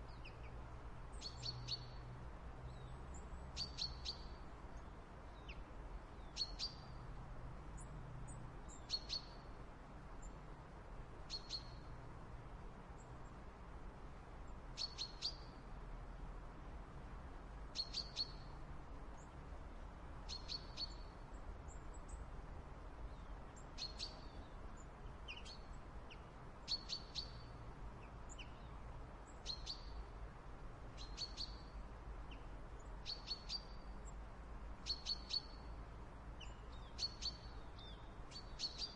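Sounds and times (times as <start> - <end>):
small birds chirping: 0.0 - 7.0, 7.8 - 9.6, 11.2 - 12.0, 14.8 - 15.6, 17.7 - 18.6, 20.2 - 22.3, 23.0 - 30.1, 30.9 - 34.2, 34.8 - 38.9.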